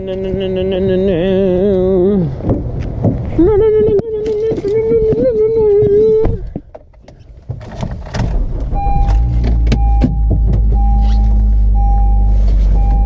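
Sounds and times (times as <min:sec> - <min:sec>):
car door clicks: 0:06.2 - 0:11.4
car engine idling: 0:08.6 - 0:13.0
dashboard warning chime: 0:08.8 - 0:13.0.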